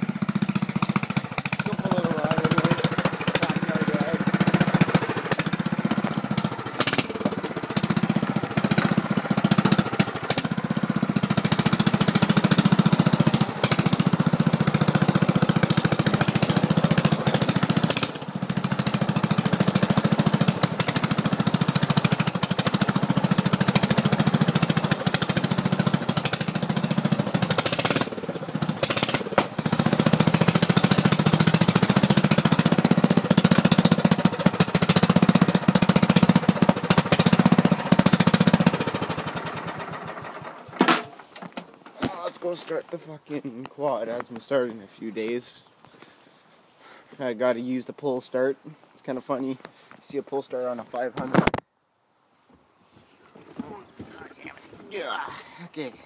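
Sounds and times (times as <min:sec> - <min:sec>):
small engine chugging: 0:00.0 - 0:41.3.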